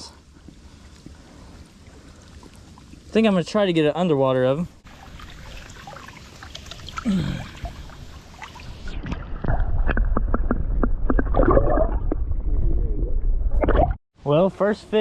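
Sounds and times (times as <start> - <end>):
water splashing: 4.7 - 12.7
underwater clicks and bubbling: 5.2 - 14.0
low underwater rumble: 7.4 - 14.0.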